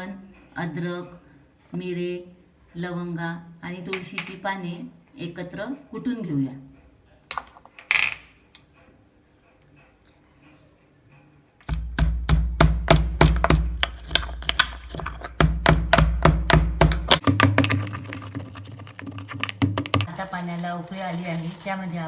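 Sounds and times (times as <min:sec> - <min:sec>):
pestle pounding in mortar: 0:11.7 - 0:20.2.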